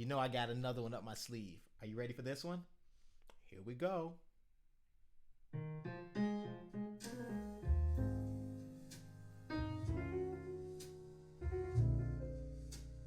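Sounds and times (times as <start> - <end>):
piano playing: 5.5 - 13.0.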